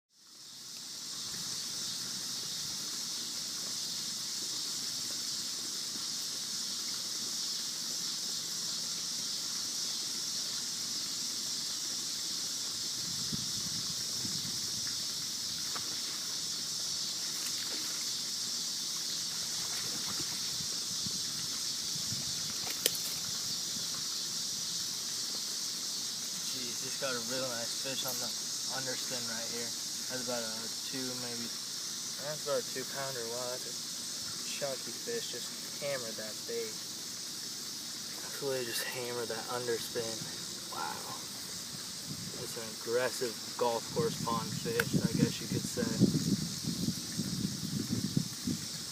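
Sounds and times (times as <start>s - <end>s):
night insects chorus: 0.1s - 48.9s
sharp click: 44.7s - 45.0s.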